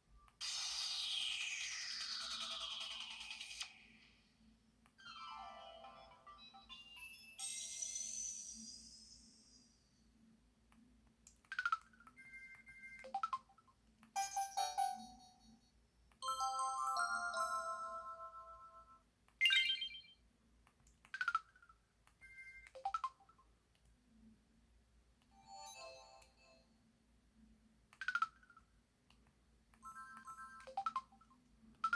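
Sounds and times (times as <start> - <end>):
electronic chirps and pitch sweeps: 19.4 - 20.2
two-tone beeps: 19.4 - 20.2.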